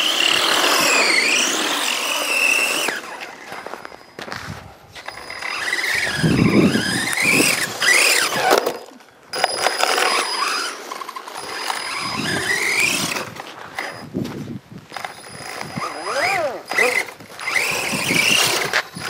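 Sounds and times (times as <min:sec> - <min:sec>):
high steady tone: 0:00.0 - 0:08.3
electric motor whining: 0:00.0 - 0:19.0.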